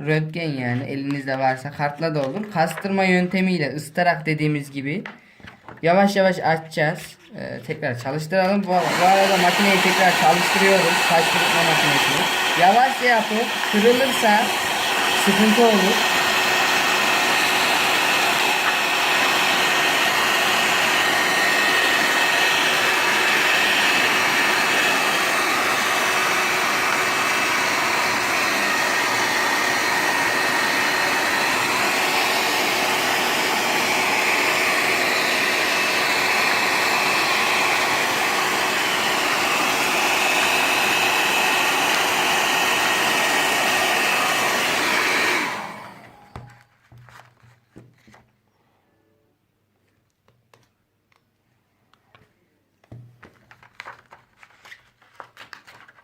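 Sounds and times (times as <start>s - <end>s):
hair dryer running: 8.4s - 46.6s.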